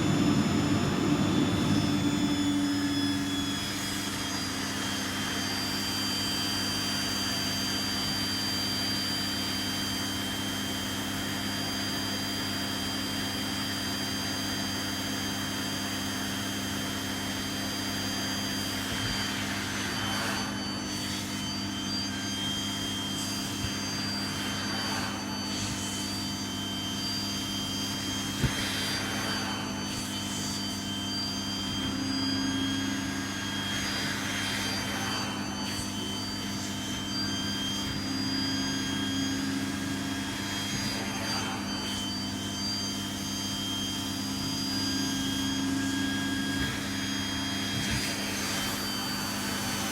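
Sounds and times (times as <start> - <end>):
vacuum cleaner running: 0.0 - 49.9
suction rushing over fabric: 16.2 - 43.6, 44.7 - 49.9.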